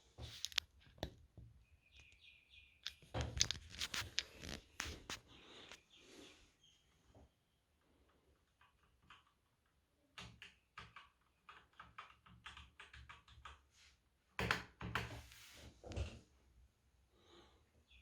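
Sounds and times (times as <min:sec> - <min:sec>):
mechanical keyboard clicking: 0:10.2 - 0:13.6.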